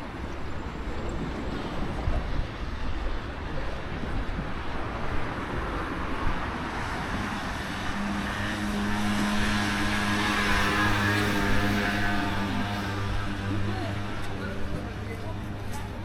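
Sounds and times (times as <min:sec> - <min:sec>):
steady rushing noise: 0:00.0 - 0:16.0.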